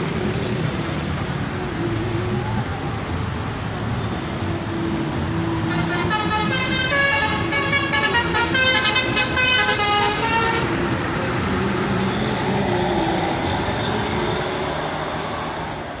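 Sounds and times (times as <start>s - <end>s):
engine and road rumble: 0.0s - 16.0s
bus horn playing a tune: 5.6s - 11.1s.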